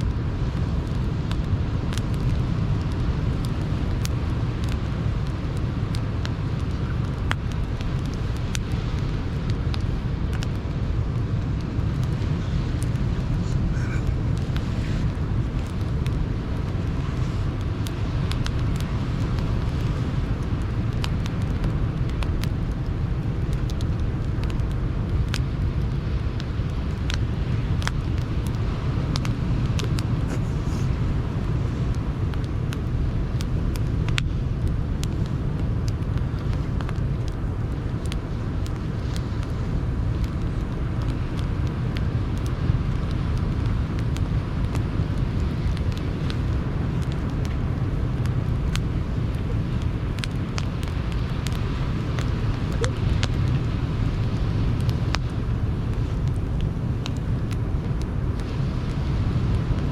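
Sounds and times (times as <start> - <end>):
sea surf rushing: 0.0 - 22.0
campfire crackling: 0.0 - 59.9.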